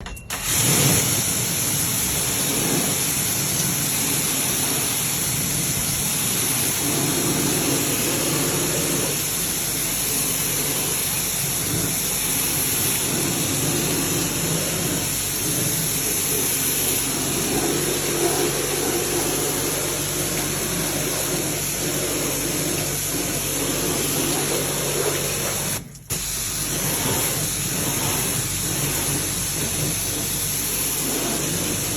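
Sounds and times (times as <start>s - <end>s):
water spray rushing: 0.4s - 31.9s.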